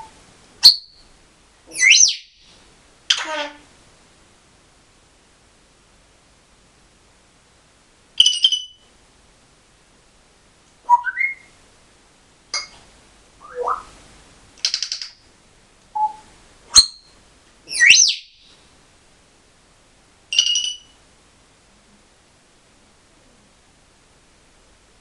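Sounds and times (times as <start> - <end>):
parrot beeping trill: 0.0 - 1.0, 1.7 - 2.3, 8.2 - 8.8, 10.9 - 11.5, 13.4 - 13.9, 17.7 - 18.3, 20.3 - 21.0
parrot squawk: 1.7 - 2.2, 3.1 - 3.6, 13.4 - 13.9, 17.7 - 18.2
parrot whistling: 1.7 - 2.3, 8.2 - 8.8, 10.9 - 11.5, 13.4 - 13.9, 16.0 - 16.2, 17.7 - 18.3, 20.3 - 21.0
parrot clicks: 14.6 - 15.2.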